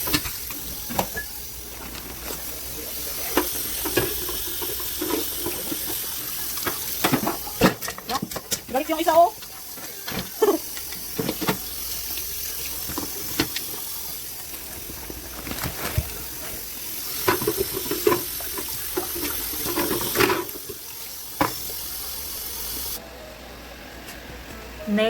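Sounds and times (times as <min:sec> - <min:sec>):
tap running into a sink: 0:09.4 - 0:21.9.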